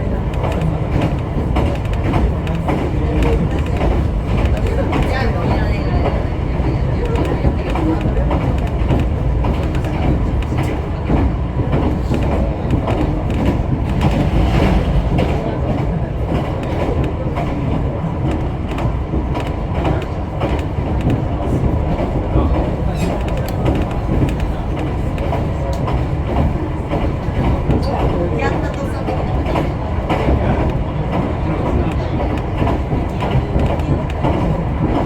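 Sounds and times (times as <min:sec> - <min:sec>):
clickety-clack of rail joints: 0:00.0 - 0:35.0
train wheels rumbling on rail: 0:00.0 - 0:35.0.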